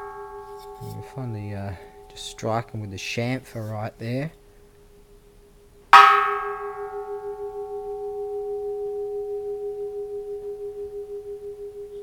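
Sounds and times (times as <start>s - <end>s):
temple bell ringing: 0.0s - 2.9s, 6.0s - 12.0s.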